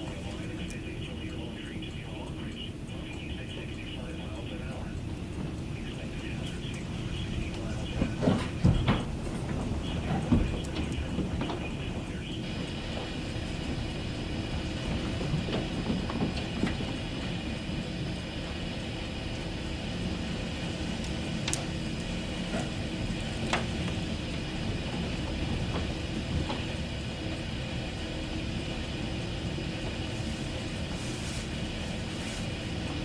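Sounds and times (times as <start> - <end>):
deep rumble: 0.0 - 33.0
heavy rain hissing: 26.6 - 33.0.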